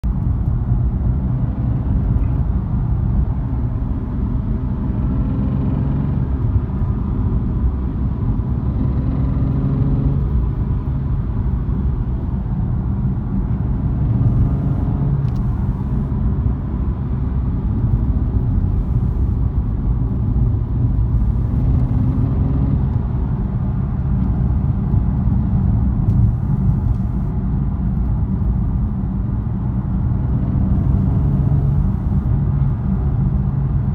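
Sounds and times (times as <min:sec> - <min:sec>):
car engine rumbling: 0:00.0 - 0:33.9.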